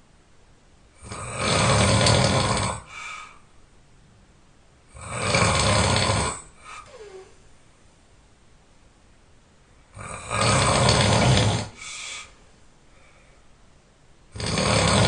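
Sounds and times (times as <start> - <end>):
person snoring loudly: 1.0 - 3.0, 4.9 - 7.3, 9.9 - 11.8, 14.3 - 15.0
soft breath: 2.7 - 3.6, 6.5 - 7.5, 11.1 - 13.6.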